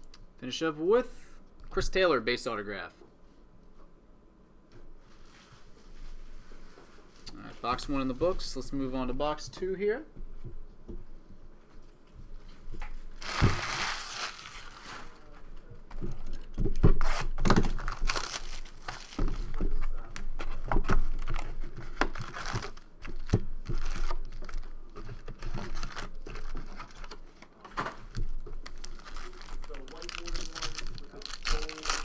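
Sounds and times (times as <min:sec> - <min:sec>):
packaging tearing and crinkling: 0:13.2 - 0:15.3, 0:16.3 - 0:19.6, 0:21.0 - 0:27.2, 0:28.0 - 0:32.0.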